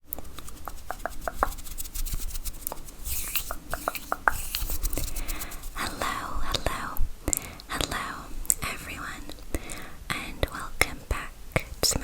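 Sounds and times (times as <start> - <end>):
scratching on a bag: 0.2 - 5.9.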